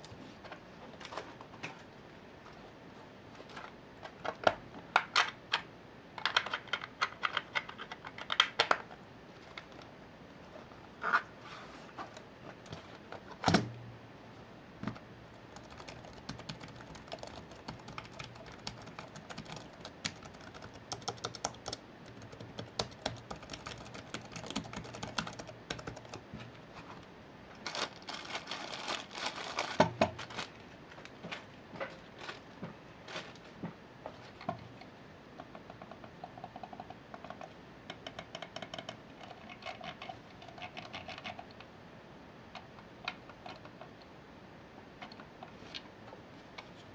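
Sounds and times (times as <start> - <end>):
quick irregular clicks and taps: 15.6 - 26.2, 34.4 - 41.7.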